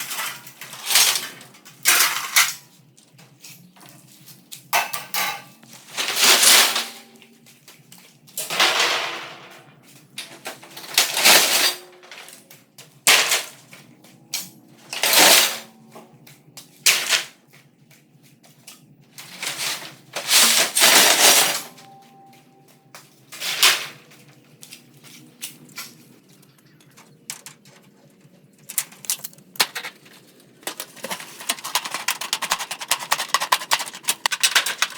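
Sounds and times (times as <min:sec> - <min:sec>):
scrap wood and metal banging: 0:04.8 - 0:07.2, 0:08.4 - 0:12.5, 0:13.1 - 0:16.1, 0:19.2 - 0:22.1, 0:23.2 - 0:24.4, 0:25.0 - 0:34.9.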